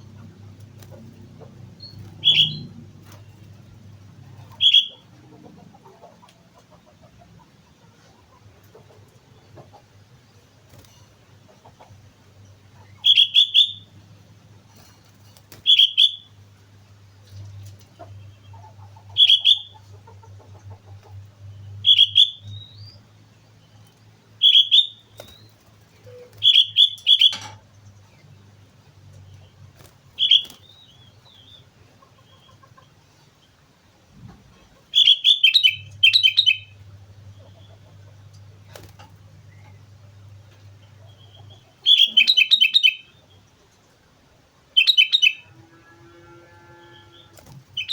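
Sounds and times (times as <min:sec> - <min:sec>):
bird singing whistled notes: 0:01.8 - 0:02.7, 0:13.1 - 0:13.9, 0:15.7 - 0:16.3, 0:21.7 - 0:23.0, 0:24.4 - 0:25.5, 0:26.1 - 0:27.4, 0:30.2 - 0:31.6, 0:35.0 - 0:36.8, 0:41.2 - 0:43.2, 0:44.8 - 0:45.5.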